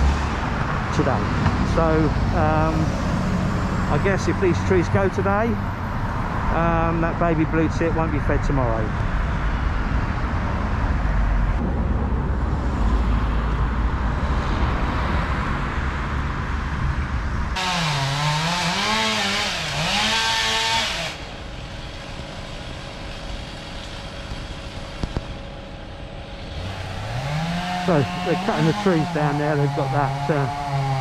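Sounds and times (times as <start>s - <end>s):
road traffic rumble: 0.0s - 31.0s
steady engine hum: 0.0s - 31.0s
chainsaw revving: 1.0s - 5.2s, 17.6s - 21.4s, 26.3s - 31.0s.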